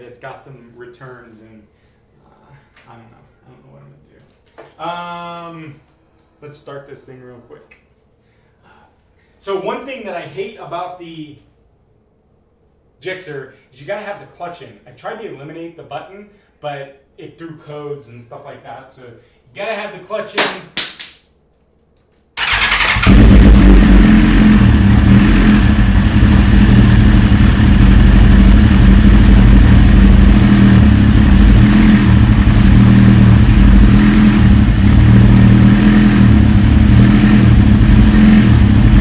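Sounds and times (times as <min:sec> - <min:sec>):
motorcycle engine starting and idling: 0:22.4 - 0:39.0.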